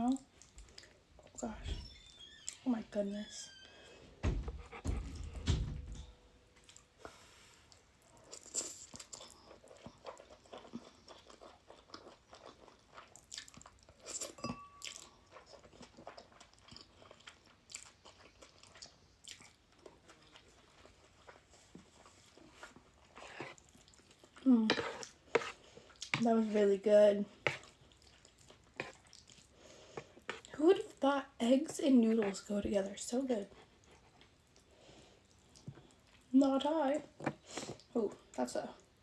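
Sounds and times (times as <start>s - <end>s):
person chewing noodles: 7.6s - 26.1s, 27.3s - 30.5s.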